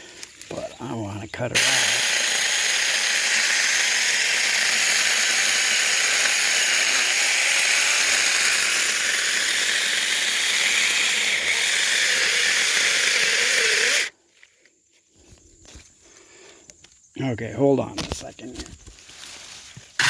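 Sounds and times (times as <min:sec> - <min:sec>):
electric chainsaw cutting wood: 0:01.6 - 0:14.1.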